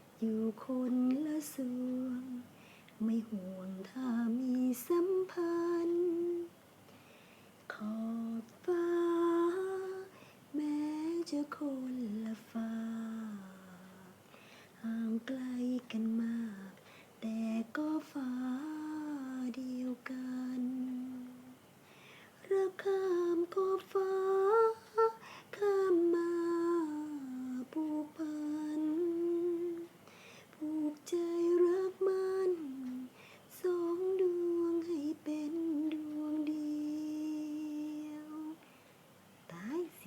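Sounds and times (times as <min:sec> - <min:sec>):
person breathing: 0:02.6 - 0:03.0, 0:06.9 - 0:07.6, 0:14.3 - 0:14.8, 0:21.8 - 0:22.4, 0:30.0 - 0:30.5
woman humming a melody: 0:22.5 - 0:29.9.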